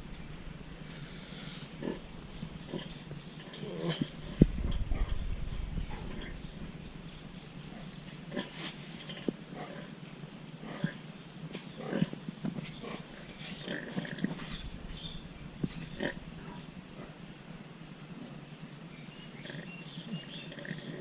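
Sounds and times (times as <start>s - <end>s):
pig grunting: 1.2s - 5.2s, 5.8s - 6.5s, 7.7s - 10.0s, 10.6s - 11.0s, 11.8s - 12.2s, 12.8s - 17.2s, 19.4s - 19.8s, 20.5s - 21.0s.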